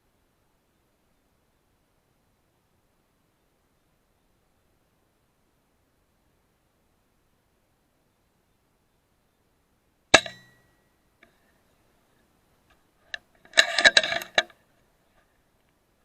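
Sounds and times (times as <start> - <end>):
metallic clicks: 10.2 - 10.7, 12.7 - 14.6.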